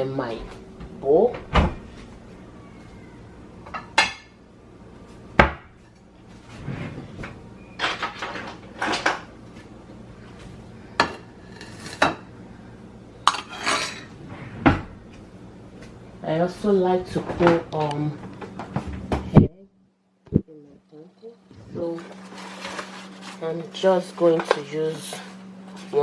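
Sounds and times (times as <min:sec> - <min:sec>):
bowl and utensils clattering: 0:07.8 - 0:09.3, 0:13.3 - 0:14.1.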